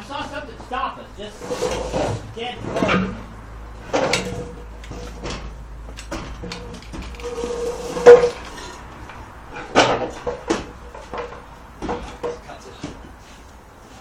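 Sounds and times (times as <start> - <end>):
metal clanks from trailer winch: 1.4 - 12.4.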